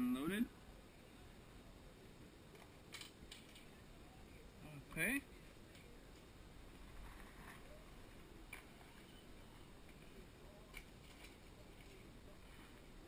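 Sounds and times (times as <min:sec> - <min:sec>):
soft rustling: 0:05.4 - 0:13.0.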